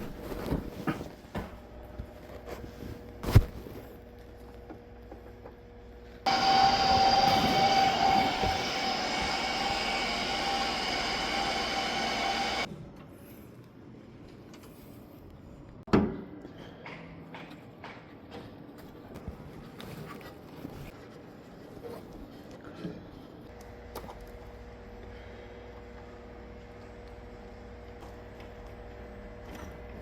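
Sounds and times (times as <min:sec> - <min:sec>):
machine motor whining: 0:06.3 - 0:12.7.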